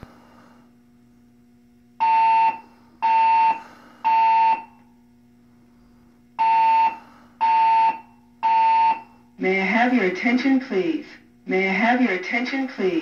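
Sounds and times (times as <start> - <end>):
fire alarm tone: 2.0 - 4.9, 6.4 - 9.2.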